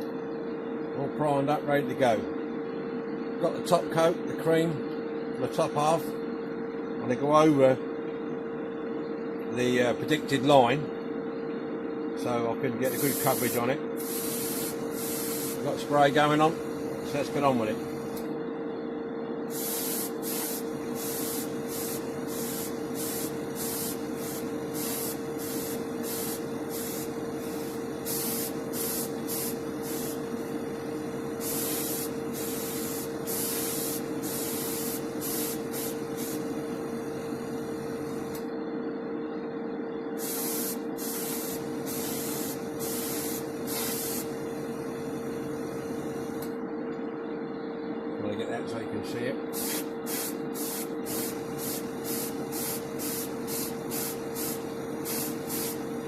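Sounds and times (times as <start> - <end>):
small compressor humming: 0.0 - 56.0
paint spray gun hissing: 12.9 - 18.2, 19.5 - 38.4, 40.2 - 46.4, 49.6 - 56.0.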